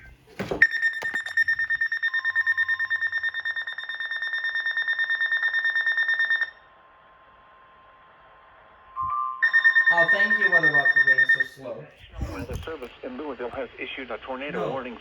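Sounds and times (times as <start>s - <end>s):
high rapid beeping alarm: 0.6s - 6.6s, 9.4s - 11.7s
steady low alert tone: 8.9s - 11.7s.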